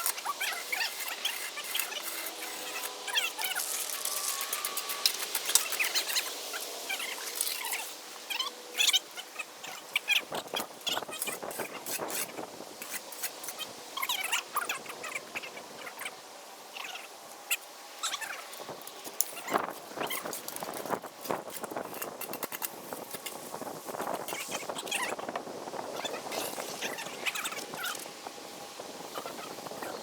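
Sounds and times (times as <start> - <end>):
trowels scraping wet concrete: 0.0 - 8.0.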